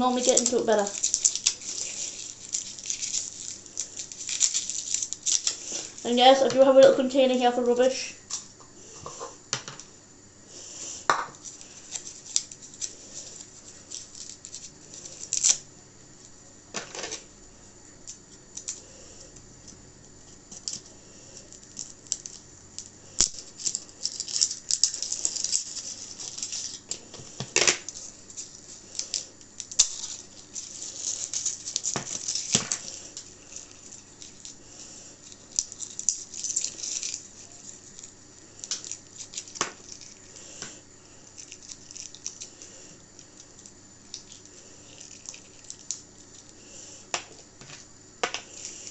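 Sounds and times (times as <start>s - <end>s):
rustling: 0.0s - 6.8s, 23.2s - 47.0s.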